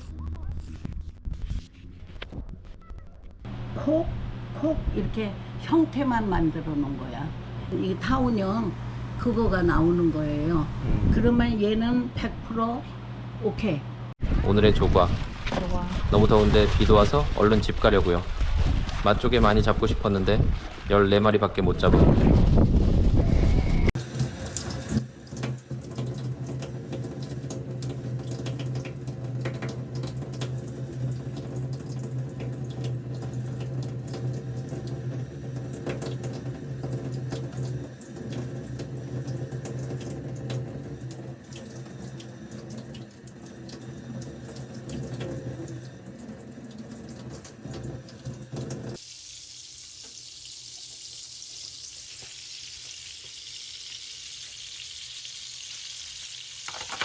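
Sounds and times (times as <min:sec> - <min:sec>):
tap water running into sink: 0:24.0 - 0:54.8, 0:56.3 - 0:57.0
clams sizzling in a pan: 0:48.9 - 0:57.0.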